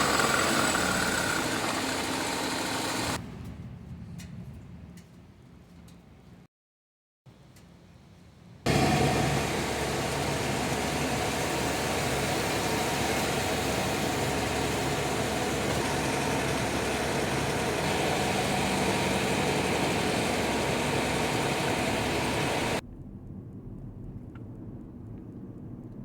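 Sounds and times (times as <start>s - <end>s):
car engine and road noise: 0.0s - 3.5s, 8.7s - 22.8s.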